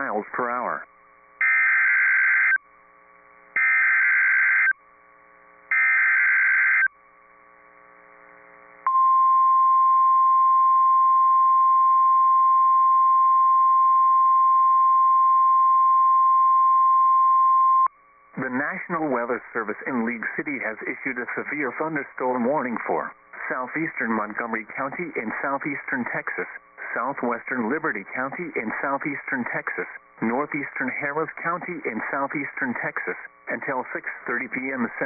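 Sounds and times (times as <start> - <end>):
steady warning alarm tone: 0.6 - 2.6, 3.6 - 4.8, 5.7 - 7.0.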